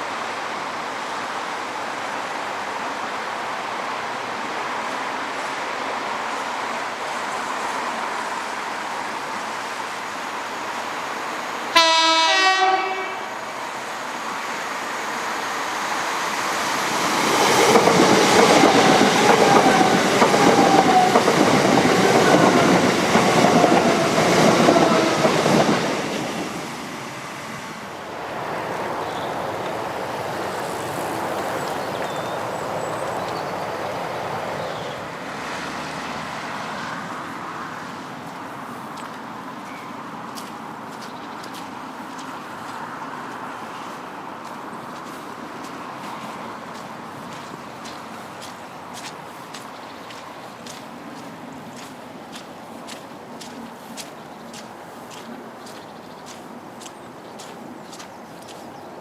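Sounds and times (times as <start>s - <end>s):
train passing with whining tones: 0.0s - 59.0s
recorded train horn blast: 11.7s - 13.5s.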